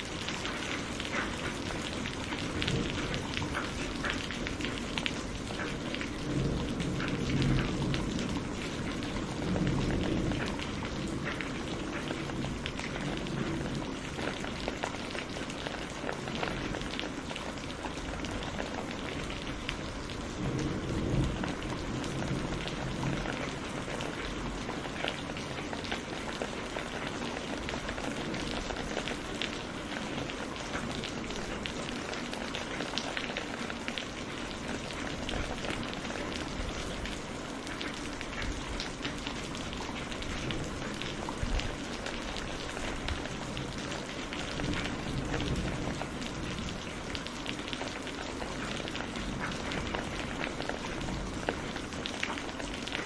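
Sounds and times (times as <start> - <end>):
heavy rain on hard surfaces: 0.0 - 53.0
distant thunder rumble: 0.3 - 15.2, 16.4 - 32.4.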